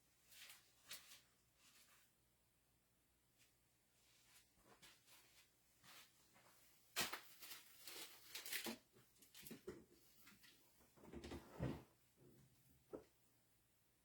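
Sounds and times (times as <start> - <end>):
handling scuffs and rustles: 4.2 - 8.7.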